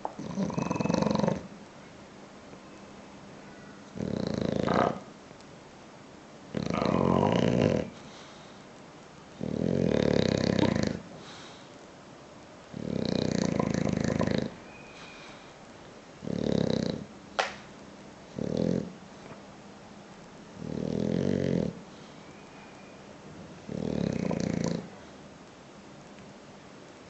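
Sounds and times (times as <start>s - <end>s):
dog snoring: 0.2s - 1.5s, 4.0s - 5.1s, 6.5s - 8.0s, 9.4s - 11.0s, 12.7s - 14.6s, 16.2s - 17.1s, 18.3s - 19.0s, 20.6s - 21.8s, 23.7s - 24.9s.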